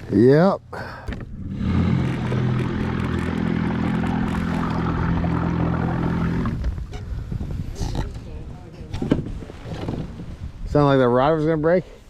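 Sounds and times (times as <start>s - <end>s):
motor running: 1.2s - 6.7s.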